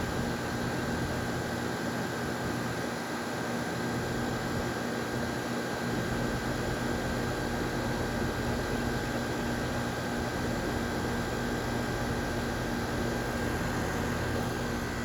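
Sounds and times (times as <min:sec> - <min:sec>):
heat pump fan running: 0:00.0 - 0:15.0.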